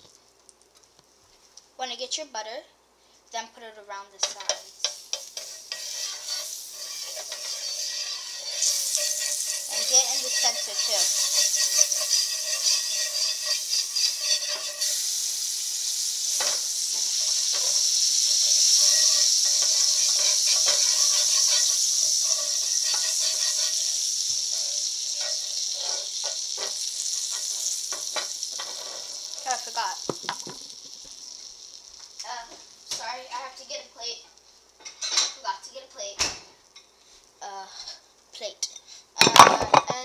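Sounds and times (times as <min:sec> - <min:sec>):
butter sizzling in a frying pan: 0:03.4 - 0:40.0
light knocks in a pan: 0:30.1 - 0:30.7.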